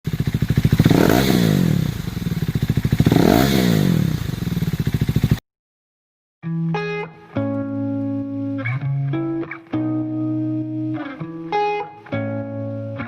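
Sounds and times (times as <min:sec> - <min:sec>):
music: 0:06.4 - 0:13.0.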